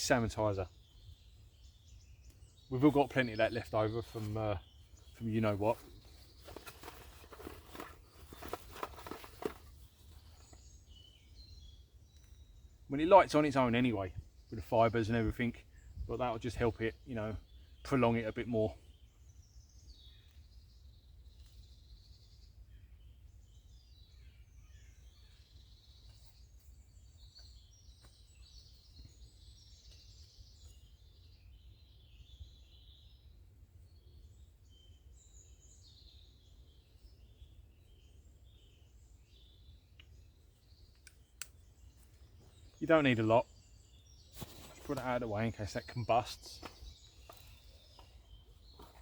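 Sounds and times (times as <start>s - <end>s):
faint bird chirps: 0.0s - 49.0s
handling clicks and rustling: 5.6s - 10.6s.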